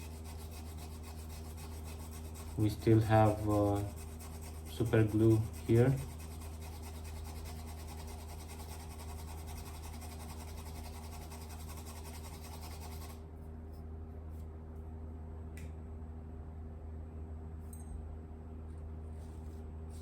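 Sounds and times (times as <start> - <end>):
wire brush scrubbing circuit board: 0.0 - 13.2
low electrical hum: 0.0 - 20.0.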